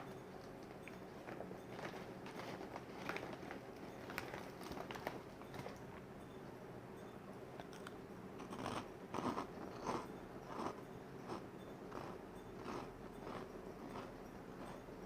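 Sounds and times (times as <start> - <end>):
person chewing food: 7.6 - 14.8.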